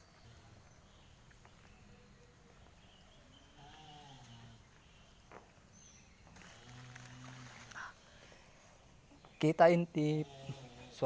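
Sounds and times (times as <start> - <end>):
tortoise moaning call: 3.3 - 5.0, 10.0 - 11.0.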